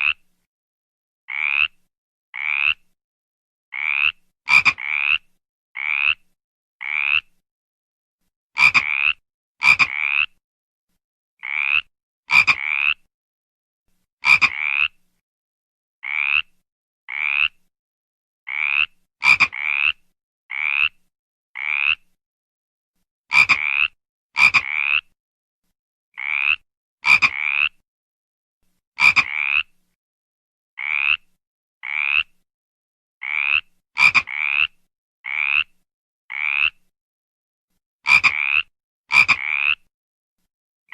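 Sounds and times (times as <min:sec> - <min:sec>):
frog croaking: 0:00.0 - 0:00.2, 0:01.3 - 0:01.8, 0:02.4 - 0:02.8, 0:03.7 - 0:06.2, 0:06.8 - 0:07.3, 0:08.6 - 0:10.4, 0:11.4 - 0:13.1, 0:14.2 - 0:15.0, 0:16.0 - 0:16.5, 0:17.1 - 0:17.6, 0:18.5 - 0:21.0, 0:21.6 - 0:22.0, 0:23.3 - 0:25.1, 0:26.2 - 0:27.8, 0:29.0 - 0:29.7, 0:30.8 - 0:32.3, 0:33.2 - 0:36.8, 0:38.1 - 0:39.9.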